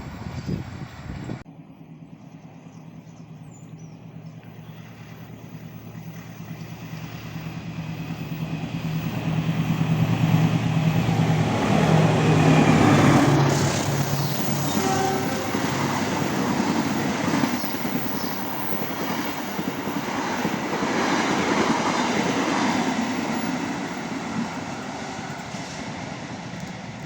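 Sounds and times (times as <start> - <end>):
train approaching at speed: 0.0 - 27.0.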